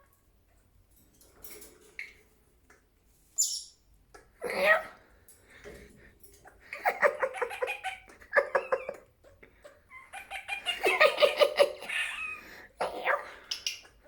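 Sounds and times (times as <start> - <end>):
parrot chattering calls: 9.9 - 13.8.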